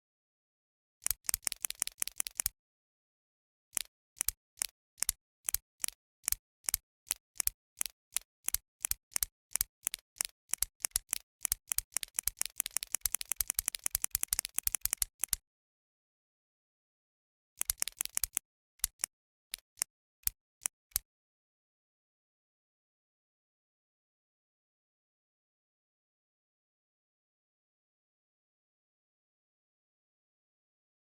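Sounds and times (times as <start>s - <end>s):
click pen clicking: 1.0s - 2.6s, 3.7s - 15.4s, 17.6s - 21.1s.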